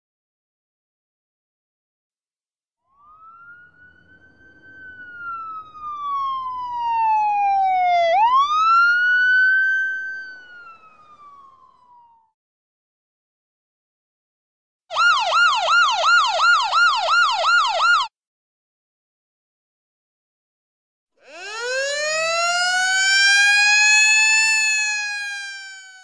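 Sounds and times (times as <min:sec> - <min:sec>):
siren wailing: 0:02.9 - 0:12.3, 0:14.9 - 0:18.1, 0:21.2 - 0:26.0.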